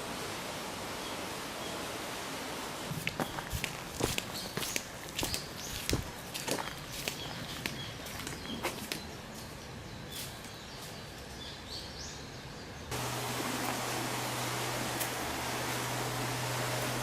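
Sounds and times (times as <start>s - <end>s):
steady hiss: 0.0s - 8.3s, 12.9s - 17.0s
footsteps: 2.9s - 9.0s
low steady hum: 12.9s - 17.0s.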